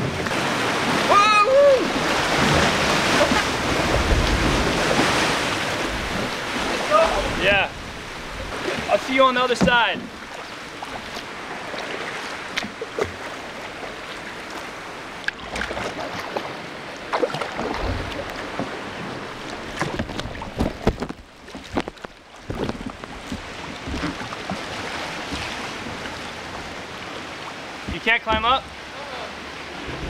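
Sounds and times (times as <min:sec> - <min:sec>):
water sloshing around kayak: 0:00.0 - 0:30.0
water splashes: 0:00.0 - 0:30.0
knocks on kayak: 0:08.7 - 0:10.2, 0:27.8 - 0:28.8.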